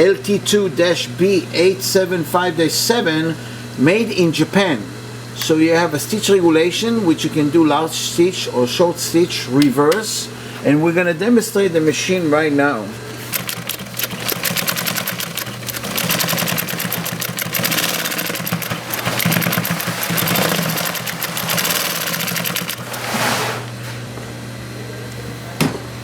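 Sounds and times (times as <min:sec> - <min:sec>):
sewing machine motor humming: 0:13.1 - 0:23.3
sewing machine needle clatter: 0:13.3 - 0:23.0.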